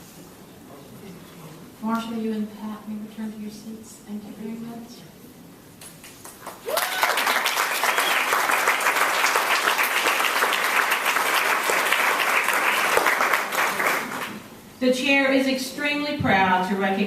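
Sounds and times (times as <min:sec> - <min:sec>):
audience applauding: 0:06.2 - 0:14.4.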